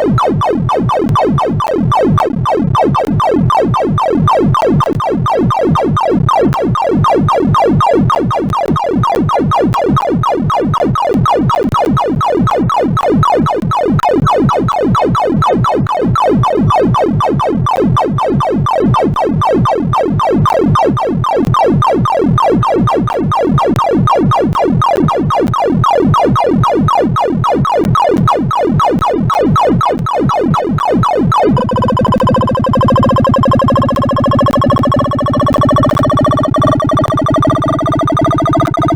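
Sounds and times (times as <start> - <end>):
sustained electronic tones: 31.6 - 38.9
synthesized rising pitch sweeps: 31.6 - 38.9.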